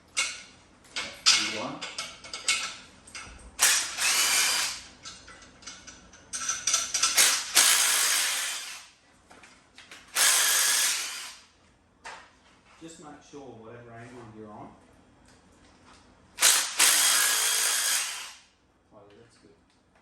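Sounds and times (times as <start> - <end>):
cordless ratchet running: 3.6 - 4.9, 6.4 - 8.8, 10.2 - 11.4, 16.4 - 18.4
ratchet clicks: 3.6 - 8.8, 16.4 - 18.4.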